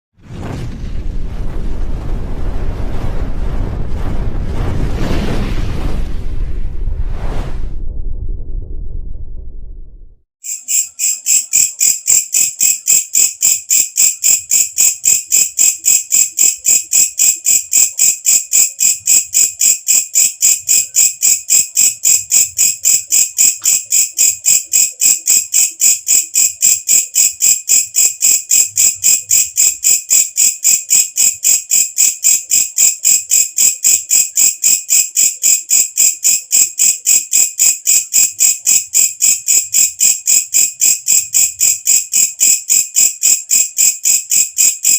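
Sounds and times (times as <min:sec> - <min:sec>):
katydid shrill chirping: 0:10.4 - 0:17.8.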